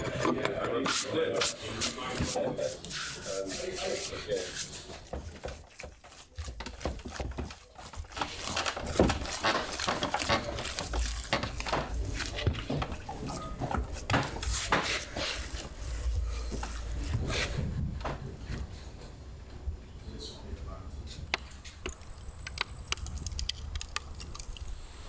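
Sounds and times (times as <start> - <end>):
hand tools knocking on wood: 4.9 - 15.2.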